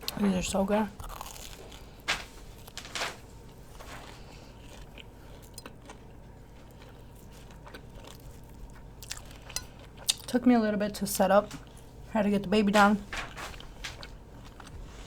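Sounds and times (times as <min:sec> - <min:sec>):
crunchy bites: 0:01.0 - 0:03.2
chewing with small clicks: 0:04.1 - 0:10.4.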